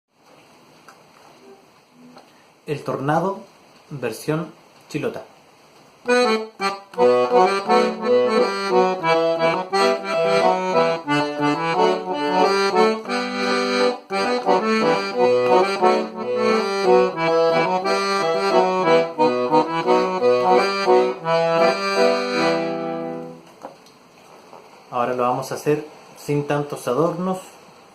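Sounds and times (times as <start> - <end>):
accordion melody: 6.0 - 23.5.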